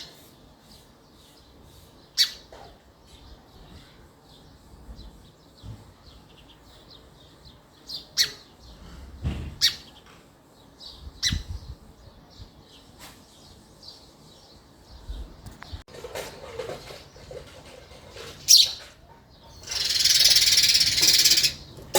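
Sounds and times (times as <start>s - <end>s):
sparrow chirping: 0.7s - 3.7s, 4.3s - 8.8s, 9.6s - 15.8s, 18.4s - 21.9s.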